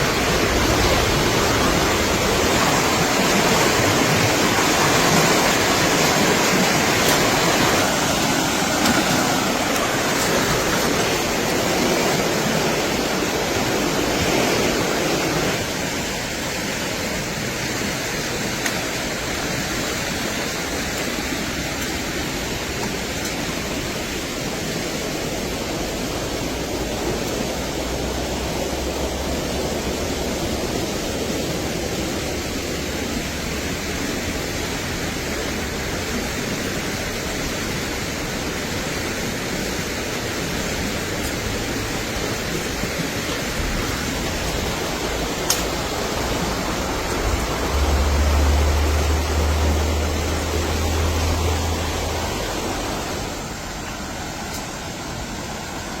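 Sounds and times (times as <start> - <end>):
steady rushing noise: 0.0 - 56.0.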